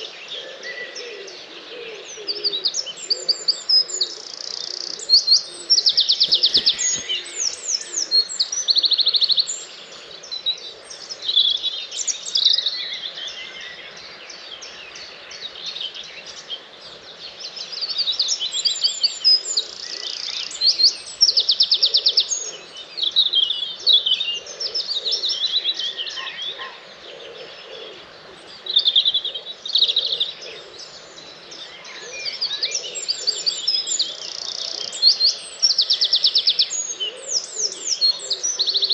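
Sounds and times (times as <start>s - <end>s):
songbirds singing: 0.0s - 38.9s
loud rapid bird trills: 5.7s - 8.4s.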